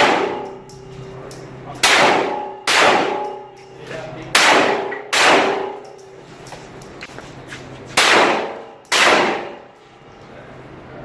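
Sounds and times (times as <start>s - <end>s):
pistol shots echoing: 0.0s - 0.6s, 1.8s - 3.5s, 4.3s - 5.9s, 8.0s - 9.7s
steel targets ringing: 0.0s - 7.2s, 8.0s - 11.0s.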